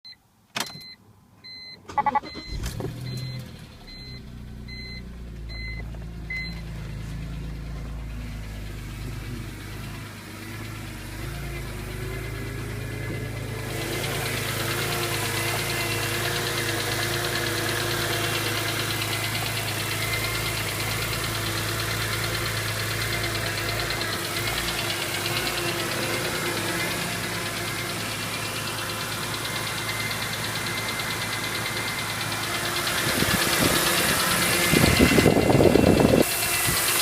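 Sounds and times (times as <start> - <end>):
car engine idling: 1.8 - 37.0.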